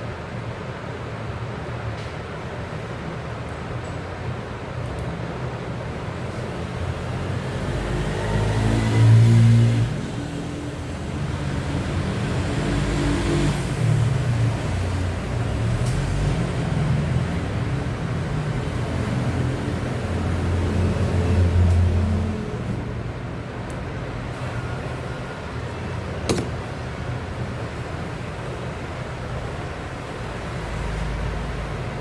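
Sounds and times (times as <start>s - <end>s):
vehicle engine revving: 6.5s - 25.8s.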